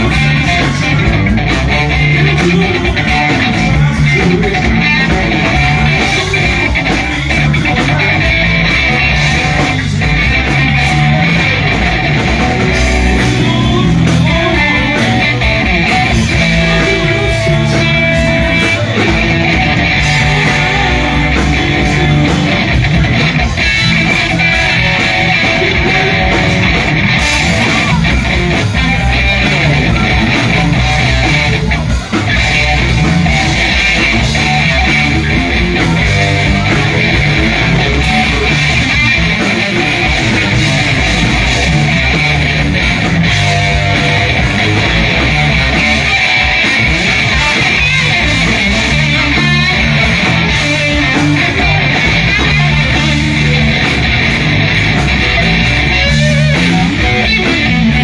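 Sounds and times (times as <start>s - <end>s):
bass line: 0.0s - 58.0s
electric guitar: 0.0s - 58.0s
live band playing: 0.0s - 58.0s.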